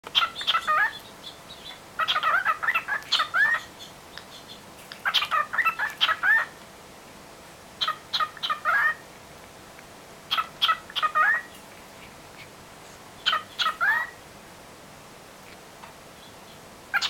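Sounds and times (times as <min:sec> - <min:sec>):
cockatiel chirping and whistling: 0:00.2 - 0:03.7, 0:04.3 - 0:06.5, 0:07.8 - 0:09.0, 0:10.3 - 0:11.5, 0:13.2 - 0:14.2.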